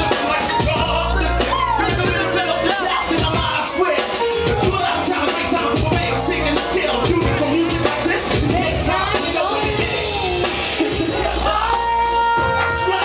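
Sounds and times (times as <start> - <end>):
bass: 0.0 - 13.0
drums: 0.0 - 13.0
live hip hop band playing: 0.0 - 13.0.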